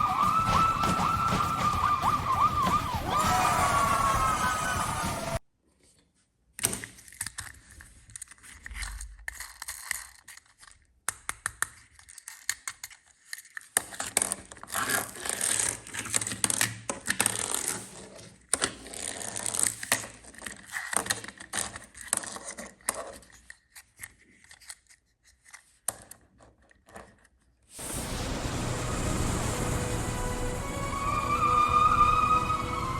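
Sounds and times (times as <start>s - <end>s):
wavering siren: 0.0s - 5.4s, 27.8s - 32.9s
toy vehicles clicking and rattling: 6.6s - 27.6s.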